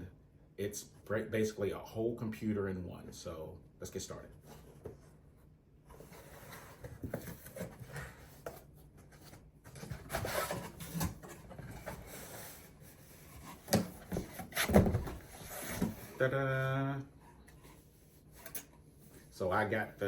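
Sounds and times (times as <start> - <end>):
cardboard rustling and scraping: 4.4 - 16.3.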